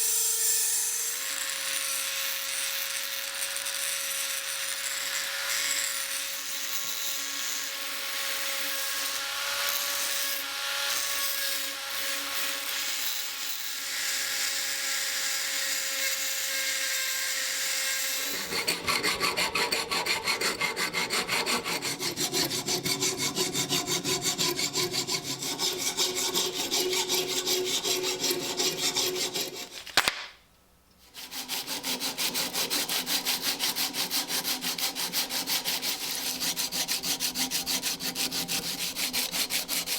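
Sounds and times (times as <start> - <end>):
hand tool rasping wood: 18.2 - 30.1, 31.0 - 39.9.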